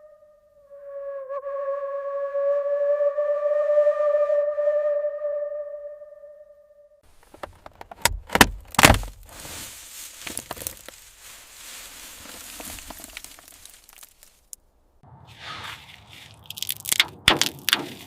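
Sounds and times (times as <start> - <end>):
rustling scraping with clicks: 7.0 - 14.6, 15.3 - 18.0.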